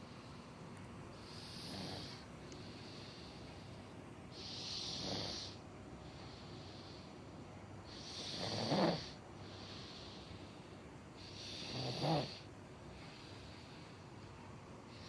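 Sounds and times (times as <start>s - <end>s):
soft hissing breaths: 0.0s - 15.0s
person snoring: 7.9s - 9.2s, 11.3s - 12.5s.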